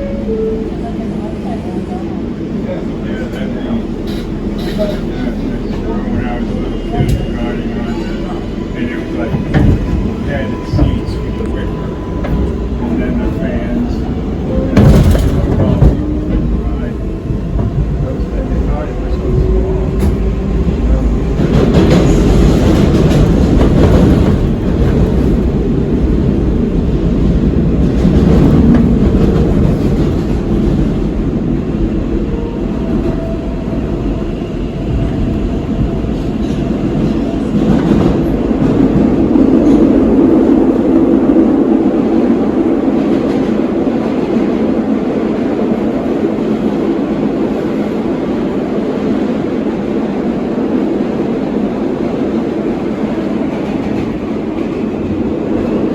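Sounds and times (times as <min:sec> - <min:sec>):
subway wheels rumbling on rails: 0:00.0 - 0:55.9
clickety-clack over rail joints: 0:03.2 - 0:08.3, 0:08.9 - 0:31.5, 0:35.0 - 0:40.4, 0:51.0 - 0:55.9.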